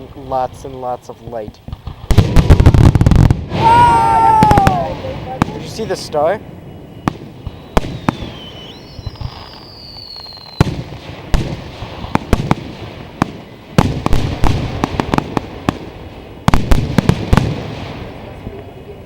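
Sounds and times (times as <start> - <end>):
fireworks bangs: 0.0 - 18.8
high falling firework whistle: 3.5 - 5.2, 6.7 - 10.7.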